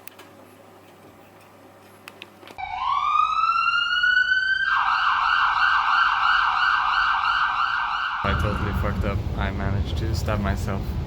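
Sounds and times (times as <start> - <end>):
emergency siren wailing: 2.6 - 9.0.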